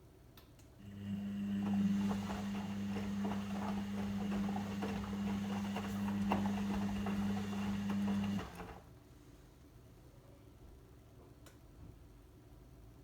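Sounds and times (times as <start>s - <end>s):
washing machine humming: 0.9s - 8.9s.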